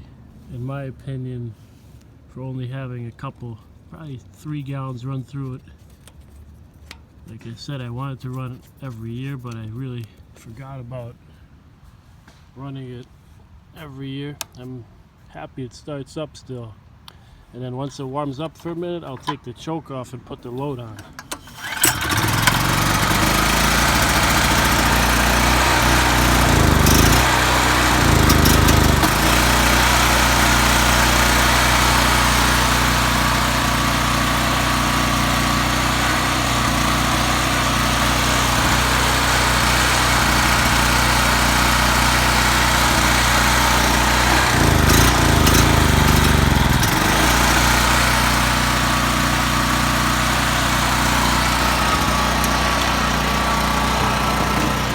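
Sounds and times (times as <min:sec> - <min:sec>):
generator engine running: 0:21.0 - 0:54.9.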